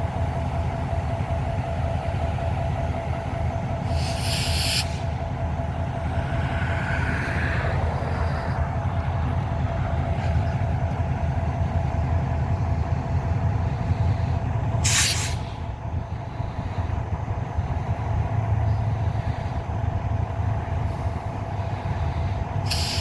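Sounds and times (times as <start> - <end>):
diesel locomotive idling: 0.0 - 23.0
air hissing: 3.8 - 5.4, 13.9 - 15.7, 21.6 - 23.0.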